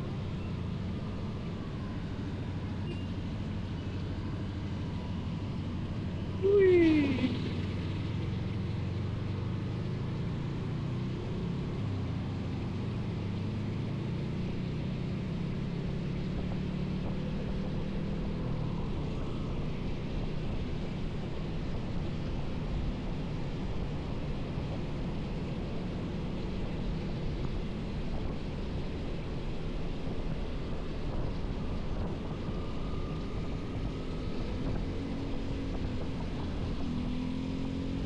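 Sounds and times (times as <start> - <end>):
tyres on wet road: 0.0 - 38.0
wind noise: 26.6 - 38.0.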